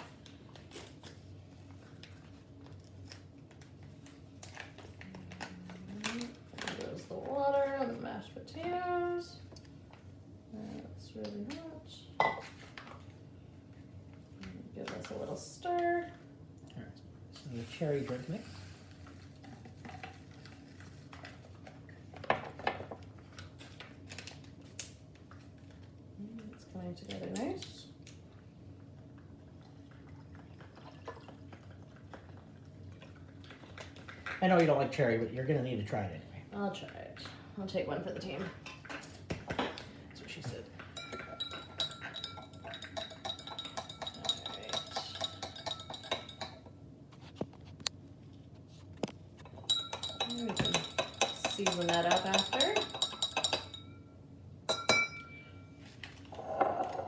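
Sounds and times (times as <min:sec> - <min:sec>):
spoon clinking in a cup: 0:40.9 - 0:46.6, 0:49.5 - 0:54.0, 0:54.7 - 0:55.6.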